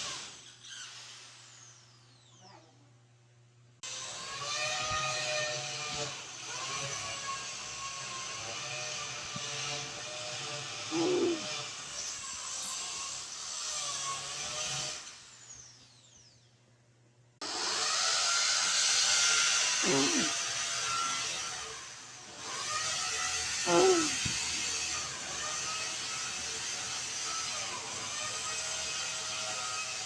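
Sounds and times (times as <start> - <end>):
hiss: 0.0 - 2.0, 17.4 - 30.0
drill whining: 0.0 - 2.2, 3.8 - 16.4, 17.4 - 30.0.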